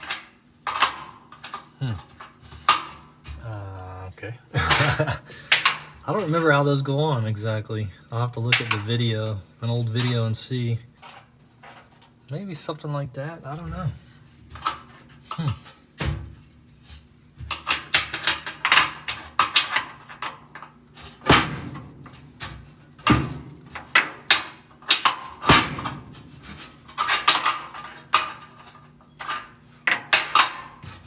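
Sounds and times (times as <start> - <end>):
metal clamps clinking and scraping: 23.8 - 31.0.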